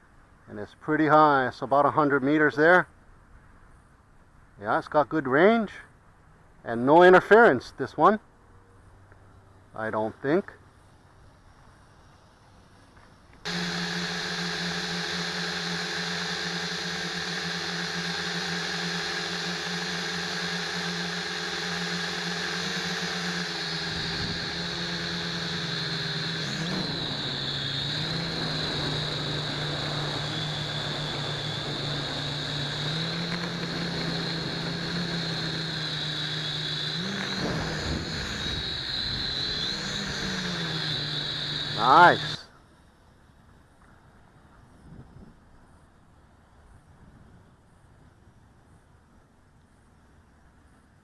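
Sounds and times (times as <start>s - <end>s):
drone motors whirring: 13.5s - 42.4s.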